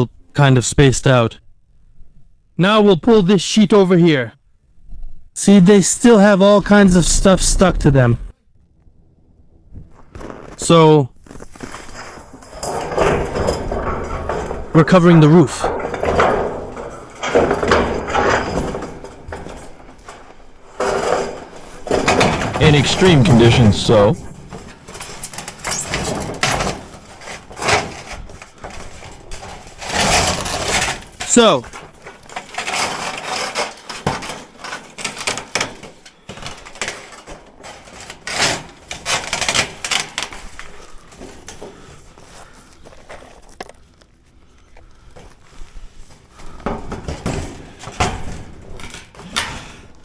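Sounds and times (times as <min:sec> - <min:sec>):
roofing sheet scraping and rustling: 0:09.9 - 0:44.4.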